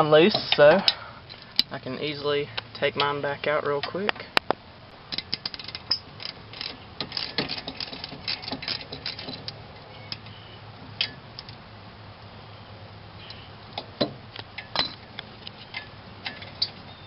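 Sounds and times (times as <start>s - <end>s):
hand ratchet clicking: 5.1s - 10.4s.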